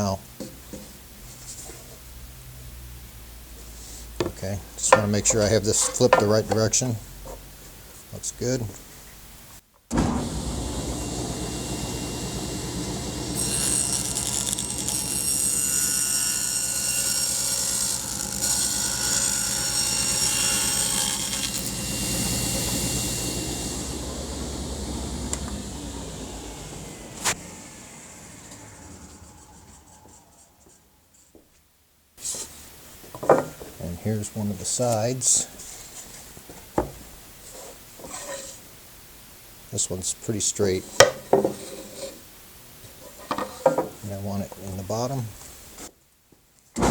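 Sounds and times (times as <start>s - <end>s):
power tool cutting wood: 9.9s - 30.8s.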